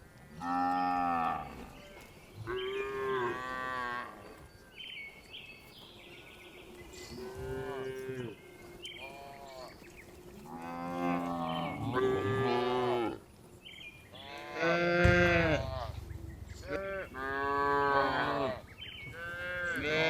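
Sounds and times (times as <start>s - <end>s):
cows mooing: 0.4s - 4.3s, 7.1s - 13.2s, 14.2s - 20.0s.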